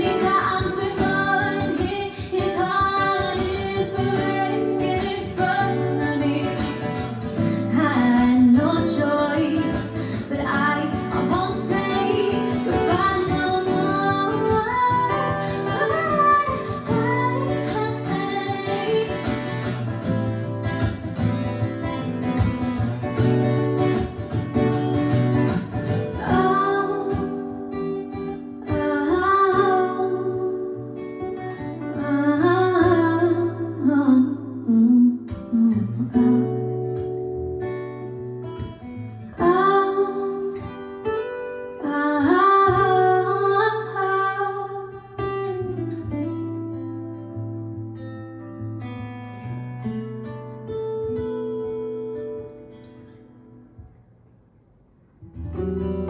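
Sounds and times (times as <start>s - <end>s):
woman singing: 0.0s - 20.2s, 25.8s - 37.2s, 39.2s - 45.6s
strummed acoustic guitar: 0.0s - 54.2s, 55.2s - 56.0s.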